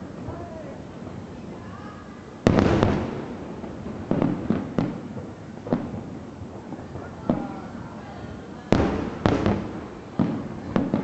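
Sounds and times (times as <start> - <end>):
fireworks booming: 2.4 - 11.0.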